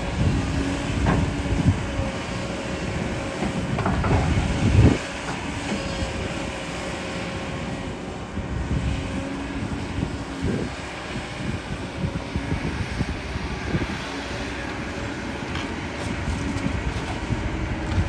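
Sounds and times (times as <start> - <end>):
excavator diesel engine whining: 0.0 - 18.0
heavy knocks and clanks: 0.9 - 1.6, 3.4 - 4.7.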